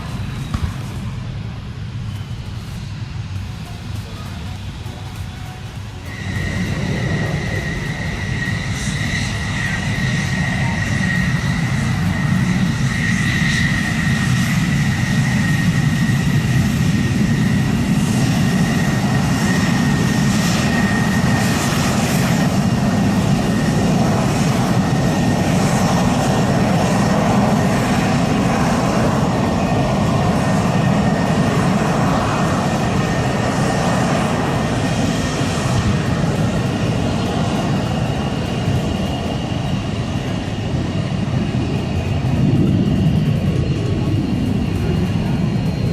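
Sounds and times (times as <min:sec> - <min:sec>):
jet engine rushing: 0:00.0 - 0:45.9
thin high whine: 0:05.2 - 0:11.3.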